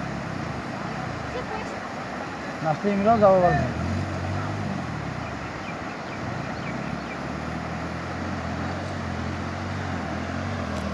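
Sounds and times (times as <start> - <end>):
vehicle engine running: 0.0 - 10.9.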